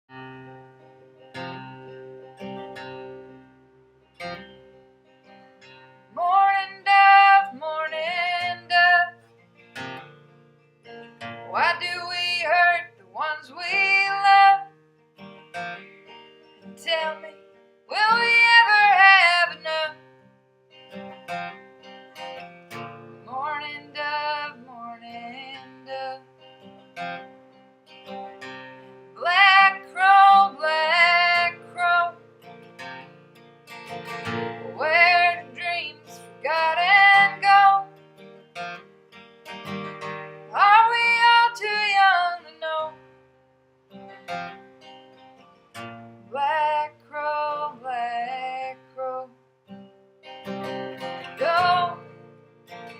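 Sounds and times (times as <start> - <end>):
acoustic guitar: 0.0 - 52.9
woman singing: 6.1 - 9.2, 11.5 - 14.7, 16.8 - 20.1, 23.2 - 26.3, 29.2 - 32.3, 34.4 - 38.0, 40.5 - 43.0, 46.3 - 49.4, 50.6 - 52.2.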